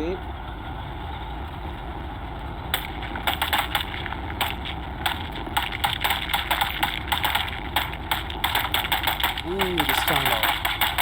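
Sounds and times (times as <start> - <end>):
low engine rumble: 0.0 - 11.0
rapid rifle shots: 2.7 - 11.0.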